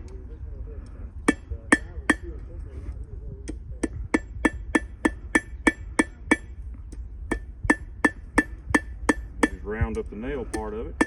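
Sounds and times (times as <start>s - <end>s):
hammer striking iron on anvil: 1.2s - 2.3s, 3.5s - 6.5s, 7.3s - 11.0s.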